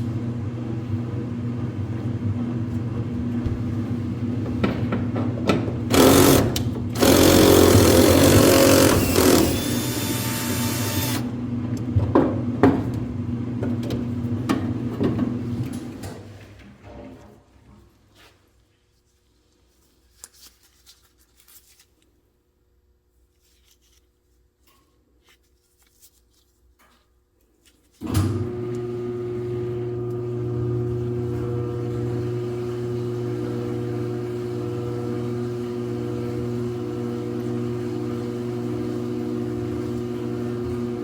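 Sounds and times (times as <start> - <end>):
clothes dryer running: 0.0 - 17.0, 28.0 - 41.0.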